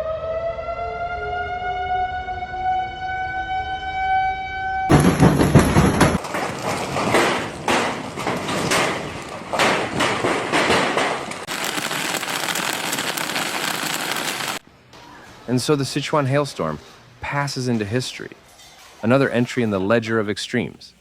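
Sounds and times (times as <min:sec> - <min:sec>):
siren tone: 0:00.0 - 0:04.9
rain pelting hard surfaces: 0:11.4 - 0:14.6.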